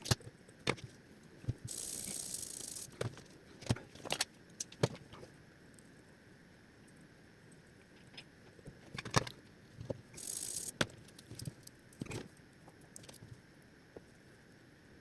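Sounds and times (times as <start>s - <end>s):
plastic parts clicking and knocking: 8.9s - 10.0s.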